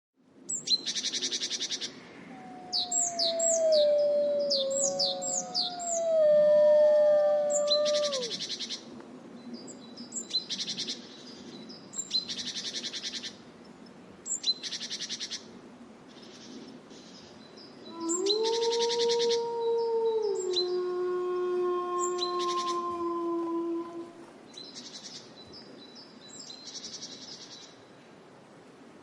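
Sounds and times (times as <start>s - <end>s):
wolves howling: 2.2s - 8.4s, 17.9s - 24.3s
birds trilling and chirping: 2.5s - 6.8s.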